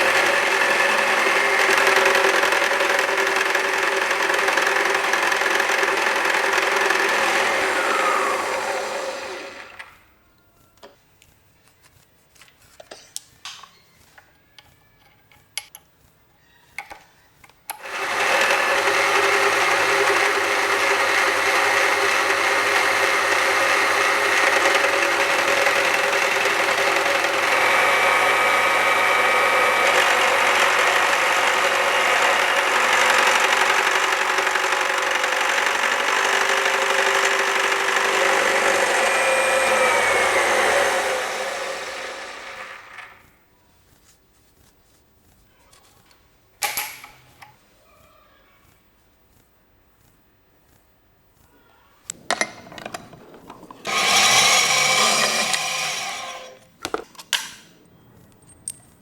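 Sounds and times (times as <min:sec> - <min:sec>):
electric motor whining: 0:00.0 - 0:09.9, 0:17.8 - 0:43.2, 0:53.8 - 0:56.7.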